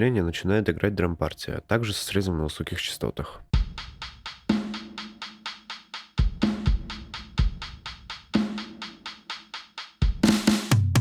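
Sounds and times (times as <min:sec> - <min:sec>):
rock drum kit playing: 0:03.6 - 0:11.0.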